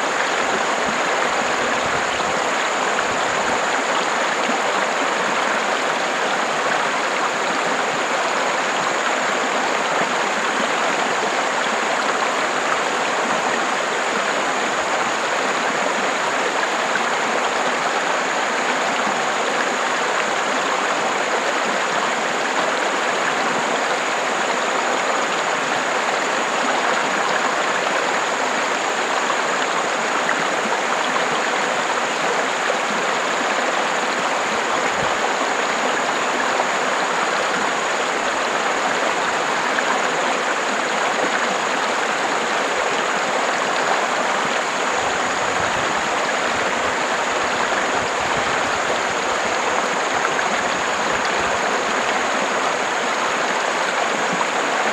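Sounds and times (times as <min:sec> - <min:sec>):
river water rushing: 0:00.0 - 0:54.9.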